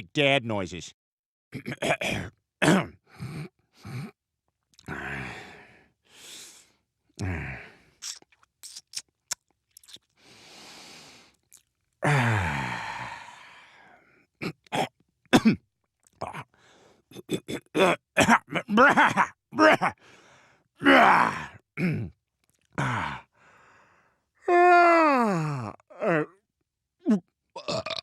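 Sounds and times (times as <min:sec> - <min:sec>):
man grunting and sighing: 0:04.8 - 0:05.7, 0:07.2 - 0:07.8, 0:12.0 - 0:13.8, 0:16.2 - 0:16.5, 0:18.6 - 0:20.1, 0:20.8 - 0:22.1, 0:22.8 - 0:23.4, 0:24.5 - 0:26.4
man groaning: 0:07.2 - 0:07.7, 0:12.0 - 0:13.4, 0:18.7 - 0:20.0, 0:20.8 - 0:22.1, 0:22.8 - 0:23.3, 0:24.5 - 0:26.3.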